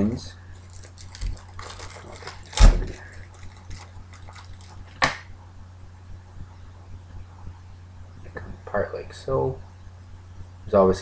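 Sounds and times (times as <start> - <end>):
hands handling parts and packaging: 0.6 - 5.2.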